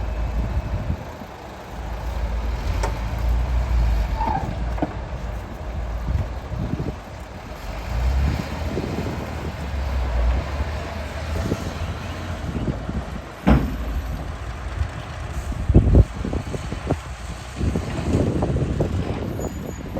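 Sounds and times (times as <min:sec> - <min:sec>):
heavy engine rumbling: 0:00.0 - 0:19.9
sharp knock: 0:13.4 - 0:14.0.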